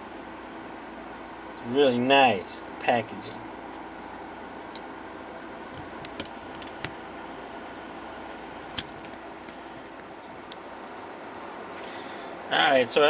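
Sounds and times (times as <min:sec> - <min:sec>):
room hum: 0:00.0 - 0:13.0
faint handling clicks and taps: 0:04.7 - 0:04.9, 0:05.7 - 0:07.1, 0:08.5 - 0:11.1.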